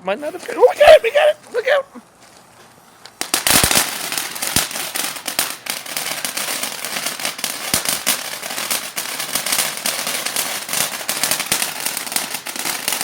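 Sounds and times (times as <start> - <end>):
firework crackling pops: 2.5 - 13.0
hissing spray of sparks: 3.2 - 13.0.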